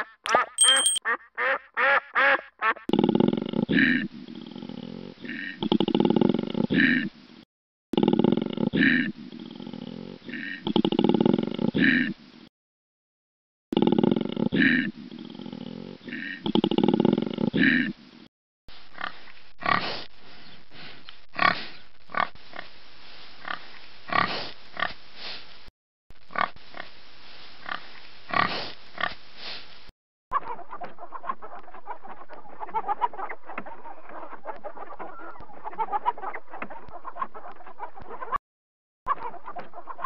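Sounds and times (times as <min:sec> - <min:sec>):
sharp farm animal calls: 0:00.0 - 0:02.8.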